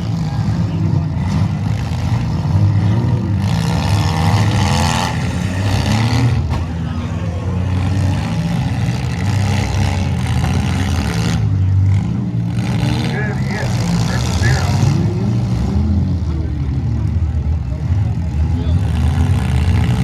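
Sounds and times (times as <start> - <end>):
car engines revving: 0.0 - 20.0.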